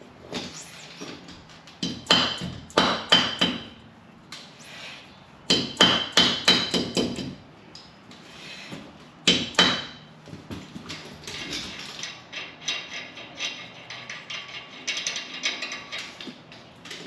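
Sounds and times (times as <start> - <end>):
hammer striking metal: 5.5 - 7.4, 9.3 - 10.0.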